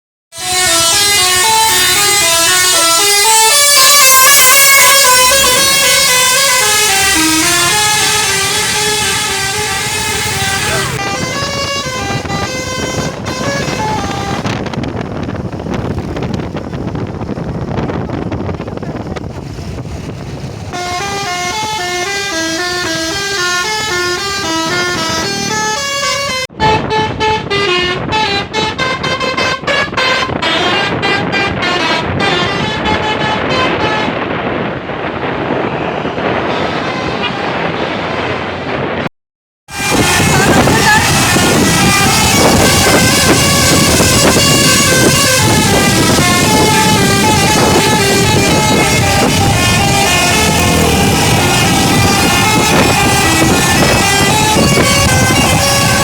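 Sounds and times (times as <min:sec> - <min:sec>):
bus horn playing melody: 0:00.3 - 0:16.2, 0:20.7 - 0:38.1, 0:39.7 - 0:56.0
vehicle noise: 0:00.3 - 0:39.1, 0:39.7 - 0:56.0.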